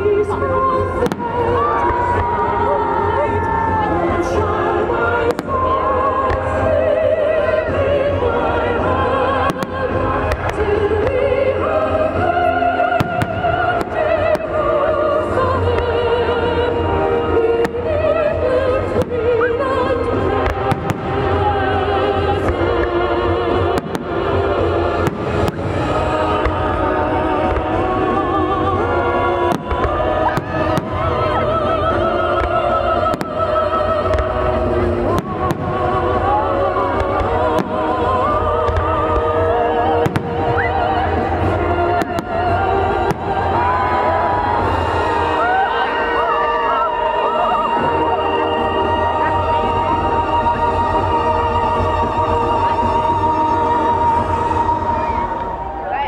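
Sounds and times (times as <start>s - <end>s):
music with long held notes: 0.0s - 56.0s
operatic singing with orchestra: 0.0s - 56.0s
fireworks bursting with bangs: 0.8s - 2.6s, 8.8s - 11.5s, 12.1s - 16.0s, 17.4s - 45.2s.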